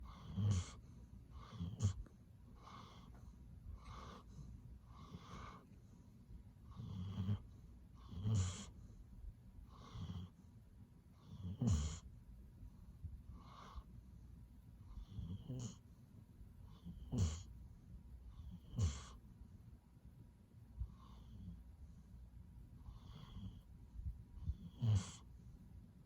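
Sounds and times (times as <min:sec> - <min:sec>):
dog snoring with wheezy whistle: 0:00.0 - 0:03.2, 0:03.8 - 0:05.7, 0:06.6 - 0:08.8, 0:09.7 - 0:10.4, 0:11.2 - 0:12.1, 0:13.3 - 0:13.9, 0:14.9 - 0:15.8, 0:16.7 - 0:17.5, 0:18.3 - 0:19.2, 0:20.8 - 0:21.7, 0:22.8 - 0:23.7, 0:24.4 - 0:25.3.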